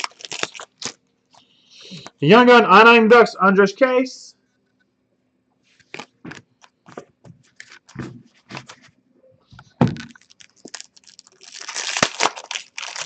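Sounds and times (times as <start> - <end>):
packaging crinkling: 0.0 - 1.0, 5.8 - 8.9, 9.6 - 13.0
trading cards clicking and rustling: 5.8 - 8.8.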